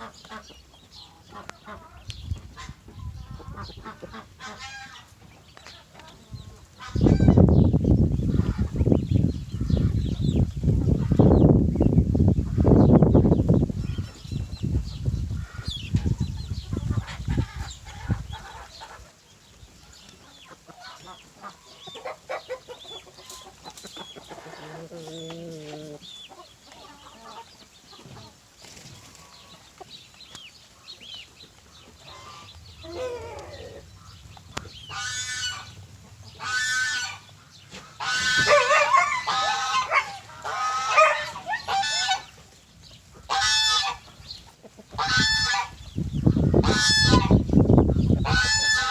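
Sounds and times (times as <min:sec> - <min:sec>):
chickens clucking: 0:00.0 - 0:48.9
roosters crowing: 0:32.0 - 0:34.2, 0:34.9 - 0:42.4, 0:43.2 - 0:44.2, 0:45.0 - 0:47.6, 0:48.2 - 0:48.9.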